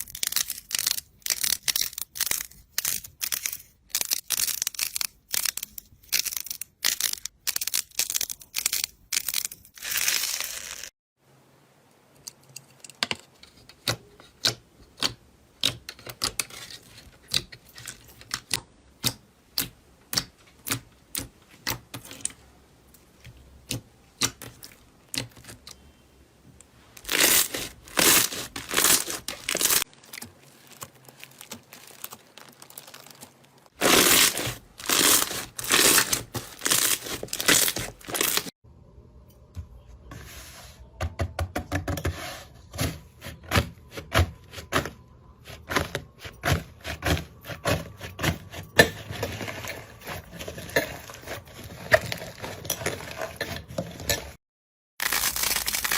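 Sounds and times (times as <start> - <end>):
slime crackling: 27.0 - 38.5, 55.0 - 55.9.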